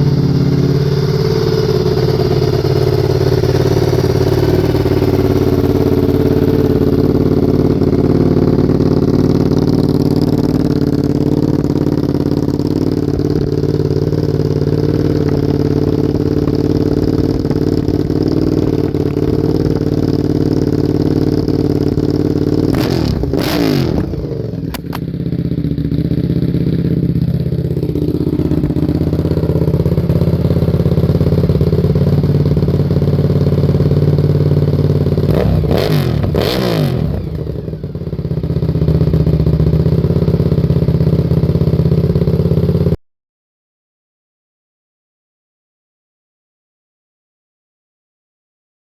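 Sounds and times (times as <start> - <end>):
motorcycle engine idling: 0.0 - 43.0
motorcycle throttle blip: 24.6 - 25.3.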